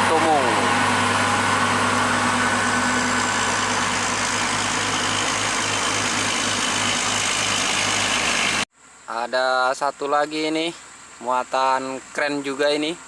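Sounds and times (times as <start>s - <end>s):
truck diesel engine under load: 0.0s - 8.7s.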